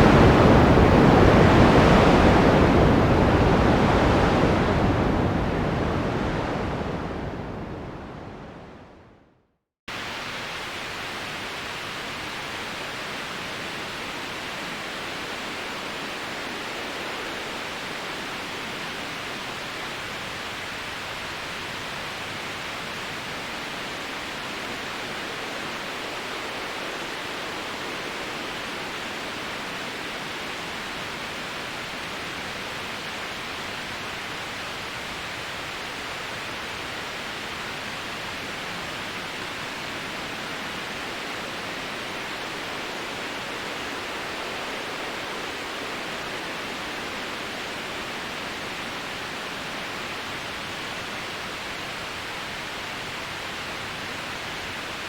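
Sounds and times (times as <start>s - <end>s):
bright pink noise: 0.0s - 3.6s.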